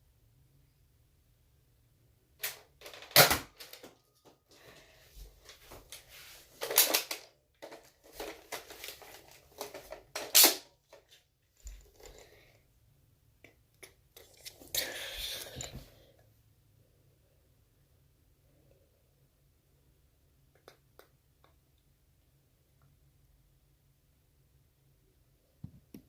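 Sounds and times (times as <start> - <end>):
plastic toy blaster clicks and rattles: 2.4 - 4.0, 6.6 - 11.0.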